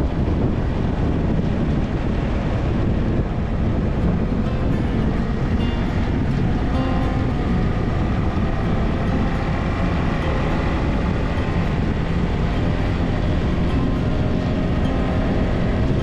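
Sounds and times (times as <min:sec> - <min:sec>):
wind and road noise: 0:00.0 - 0:16.0
motorcycle engine running: 0:04.0 - 0:16.0.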